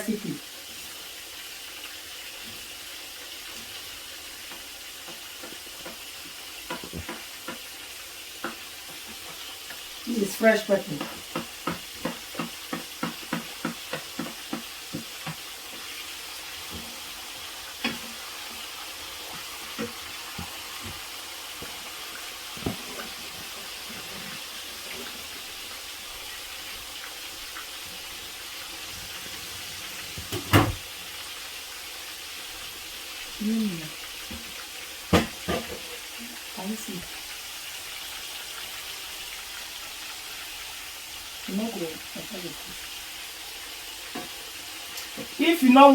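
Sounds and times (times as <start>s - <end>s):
frying sizzle: 0.0s - 45.9s.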